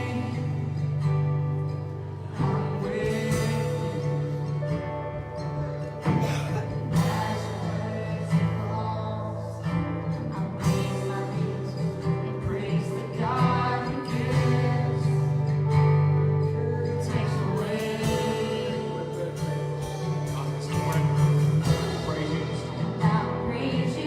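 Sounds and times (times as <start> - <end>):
voices singing worship song: 0.0 - 24.0
worship band playing: 0.0 - 24.0.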